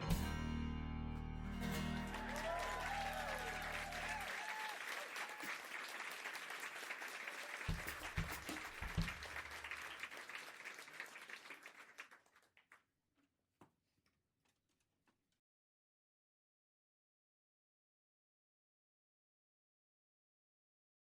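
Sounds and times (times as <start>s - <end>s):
audience applauding: 1.8s - 12.8s.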